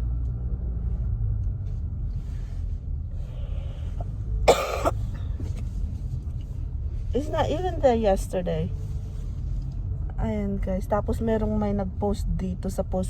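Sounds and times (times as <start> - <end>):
car cabin rumble while driving: 0.0 - 13.0
person coughing: 4.5 - 5.0.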